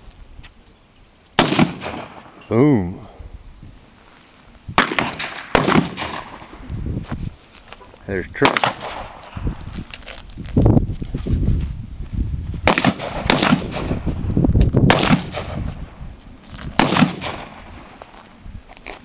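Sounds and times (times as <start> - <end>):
revolver shots: 1.4 - 2.4, 4.8 - 6.6.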